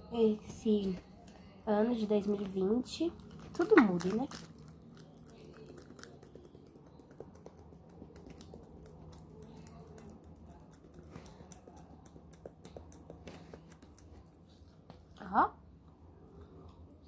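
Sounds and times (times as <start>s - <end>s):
sticky clicks of slime mixing: 3.3s - 14.3s.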